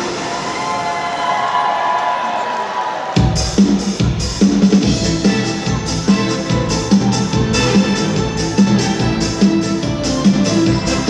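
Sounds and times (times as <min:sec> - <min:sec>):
drum and bass beat: 0:03.2 - 0:11.0.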